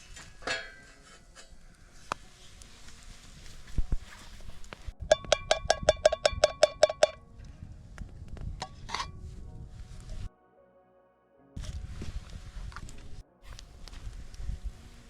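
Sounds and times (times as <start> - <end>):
metal utensil tapping metal pot: 0.4 - 1.5, 5.1 - 7.2, 8.6 - 9.2.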